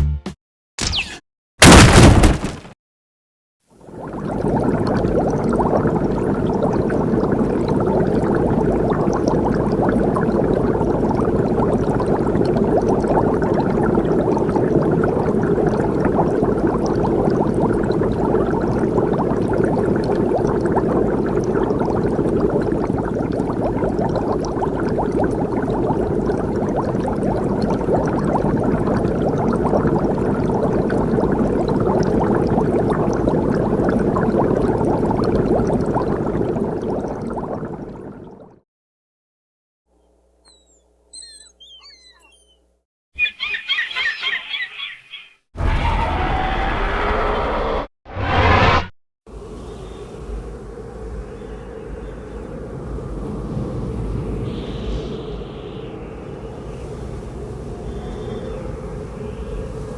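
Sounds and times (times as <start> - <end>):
dense bubbling with crackles: 3.7 - 38.6.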